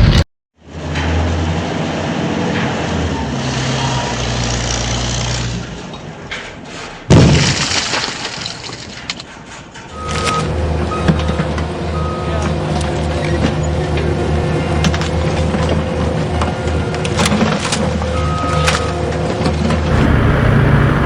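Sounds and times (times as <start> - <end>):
loud crash: 19.9 - 21.0
low vehicle engine rumble: 19.9 - 21.0.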